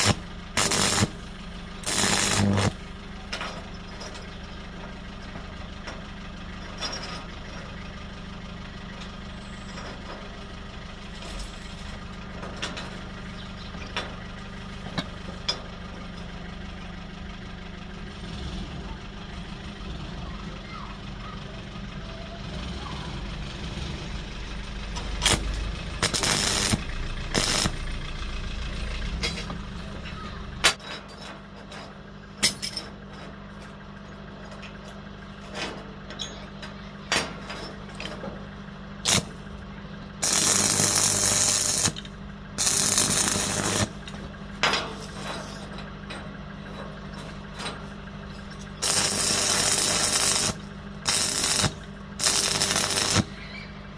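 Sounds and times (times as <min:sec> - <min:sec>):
hissing crackling bursts: 0:00.0 - 0:01.2, 0:01.8 - 0:02.8, 0:26.0 - 0:27.8, 0:40.2 - 0:42.0, 0:42.6 - 0:44.0, 0:48.8 - 0:53.3
machine hum: 0:00.0 - 0:03.1, 0:24.6 - 0:29.8, 0:39.0 - 0:53.9
steel parts knocking and clinking: 0:01.8 - 0:06.0, 0:06.6 - 0:07.8, 0:30.6 - 0:38.5, 0:40.2 - 0:53.3.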